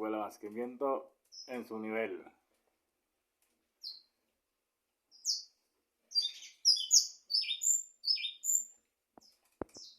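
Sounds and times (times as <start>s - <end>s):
small bird chirping: 1.2s - 1.7s, 3.8s - 4.2s, 5.1s - 9.9s.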